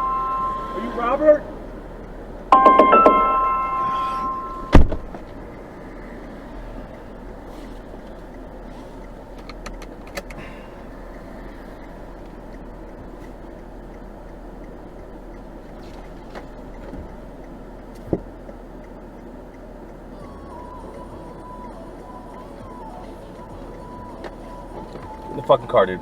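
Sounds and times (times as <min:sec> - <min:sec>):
car cabin noise: 0:00.0 - 0:26.0
sharp knock: 0:02.6 - 0:05.1
light clicks: 0:06.2 - 0:10.4.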